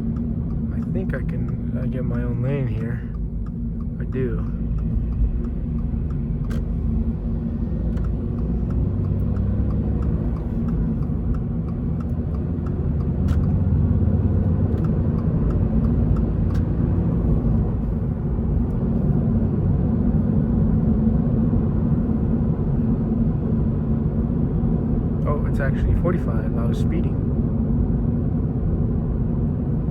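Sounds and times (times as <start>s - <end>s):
car engine running: 0.0s - 29.9s
road and tyre rumble: 0.0s - 29.9s.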